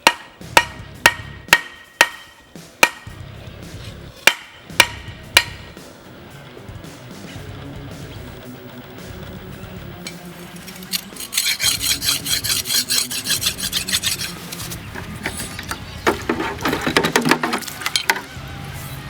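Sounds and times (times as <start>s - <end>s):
file scraping steel: 10.1s - 18.2s.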